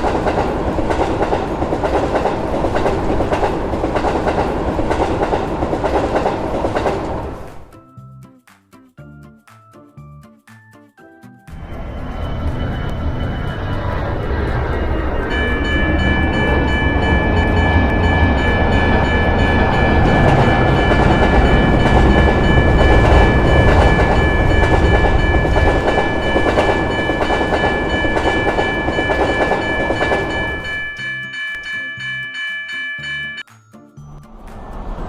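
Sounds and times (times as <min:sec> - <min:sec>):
train wheels clacking on rails: 0:00.0 - 0:07.7, 0:11.5 - 0:33.4
steady high-pitched chord: 0:11.5 - 0:33.5.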